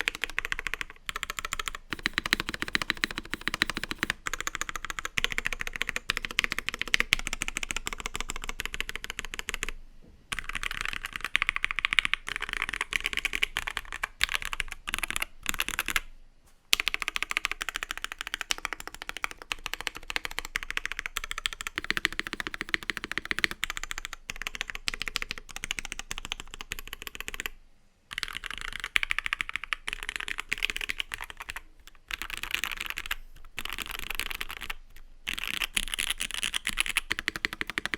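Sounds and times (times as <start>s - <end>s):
mechanical keyboard keys clacking: 28.1s - 37.9s.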